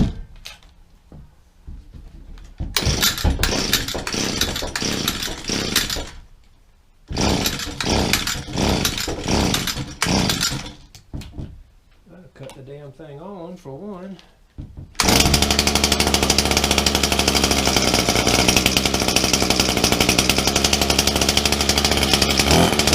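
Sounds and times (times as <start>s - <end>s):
brush cutter engine running roughly: 2.8s - 6.2s, 7.1s - 10.8s, 15.0s - 22.9s.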